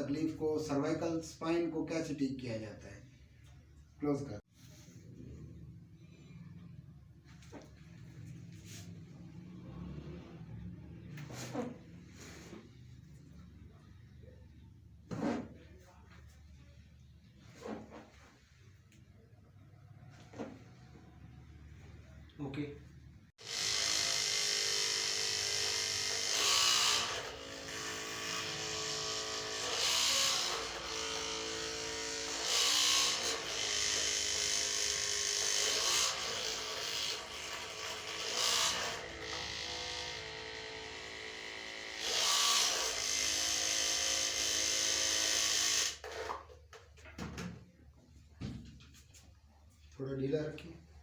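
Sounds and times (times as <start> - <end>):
small electric motor buzzing: 23.4 - 46.4.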